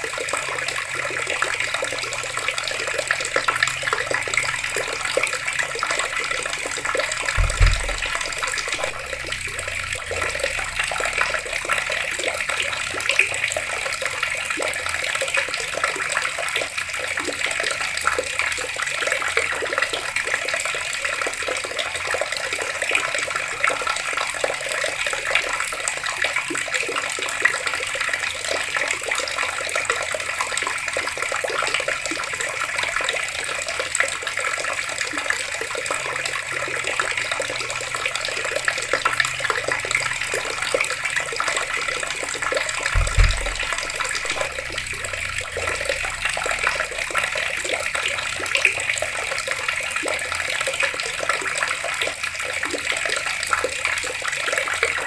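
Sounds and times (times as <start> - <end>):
water taps running: 0.0 - 55.0
low thump: 7.4 - 11.2, 42.9 - 46.2.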